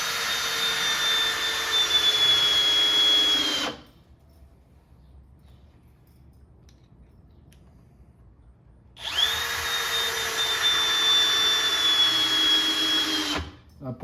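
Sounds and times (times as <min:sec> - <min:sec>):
screw gun whining: 0:00.0 - 0:03.9, 0:09.0 - 0:13.7.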